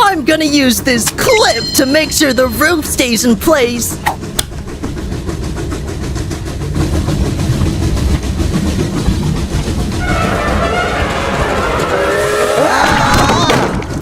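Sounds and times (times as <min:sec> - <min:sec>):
clickety-clack of wheels: 0:00.0 - 0:14.0
train rumbling on rails: 0:00.0 - 0:14.0
high-pitched sound: 0:01.2 - 0:03.2.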